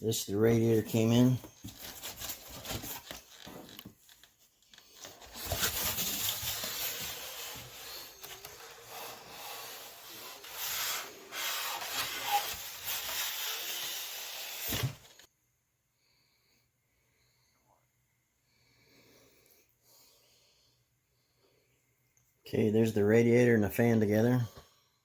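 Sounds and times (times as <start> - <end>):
cardboard rubbing and scraping: 0.5 - 4.2, 4.8 - 15.3.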